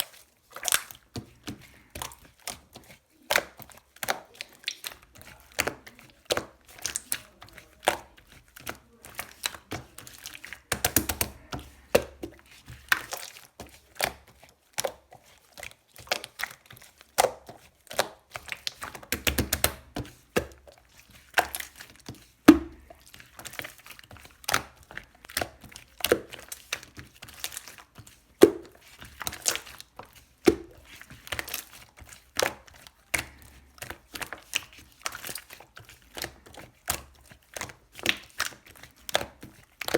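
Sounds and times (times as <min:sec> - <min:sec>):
slime snapping: 0:10.7 - 0:11.4.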